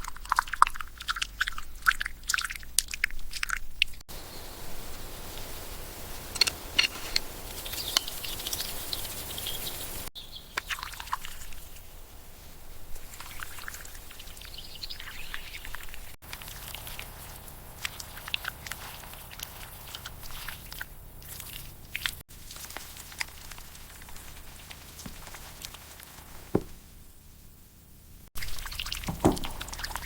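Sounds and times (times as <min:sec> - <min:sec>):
birds chirping: 0:04.1 - 0:22.0, 0:28.4 - 0:30.0
steady outdoor hiss: 0:04.1 - 0:30.0.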